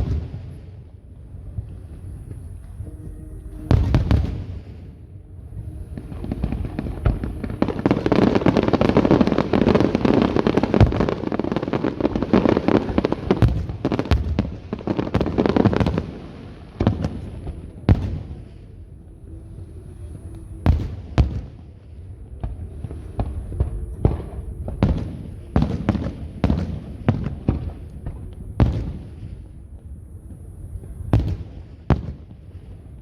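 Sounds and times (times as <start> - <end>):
fireworks banging: 0.0 - 18.8, 20.6 - 29.5
fireworks bursting and crackling: 0.0 - 18.8, 20.0 - 33.0.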